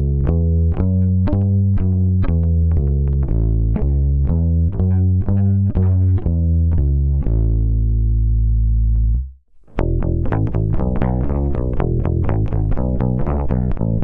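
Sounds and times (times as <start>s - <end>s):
bass guitar notes: 0.0s - 14.0s.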